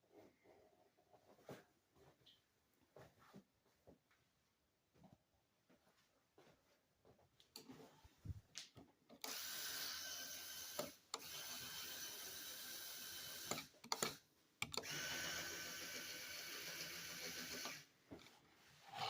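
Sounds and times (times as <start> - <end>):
small electric motor whirring: 9.2 - 14.1, 14.8 - 17.9
clicks from handling parts: 13.5 - 14.9.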